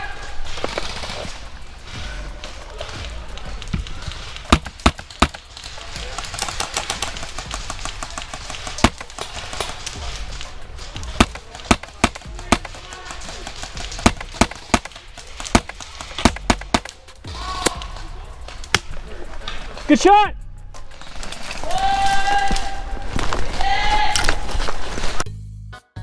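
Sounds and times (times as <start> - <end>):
airsoft gun shots: 2.8 - 19.2.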